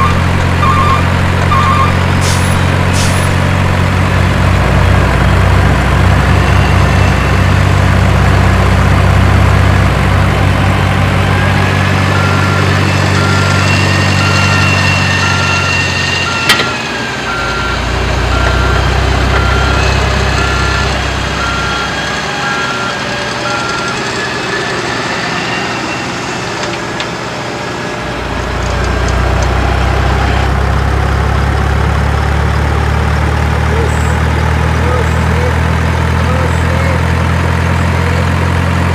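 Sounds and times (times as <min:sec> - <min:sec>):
reversing beeper: 0:00.0 - 0:09.2, 0:10.2 - 0:27.0
truck engine running: 0:00.0 - 0:38.9.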